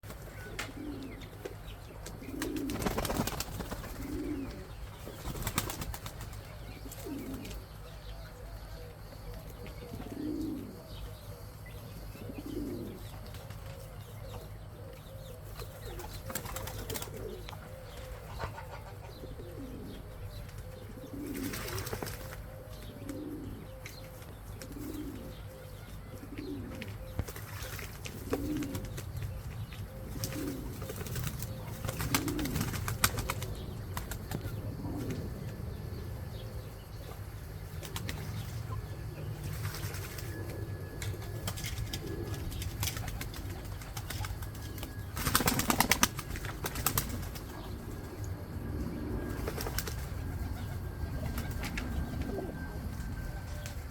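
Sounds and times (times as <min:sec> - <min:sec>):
pigeons cooing: 0:00.0 - 0:53.9
wing flapping: 0:02.3 - 0:07.6, 0:15.9 - 0:17.4, 0:21.2 - 0:22.5, 0:30.1 - 0:35.4, 0:39.4 - 0:48.2, 0:49.3 - 0:53.9.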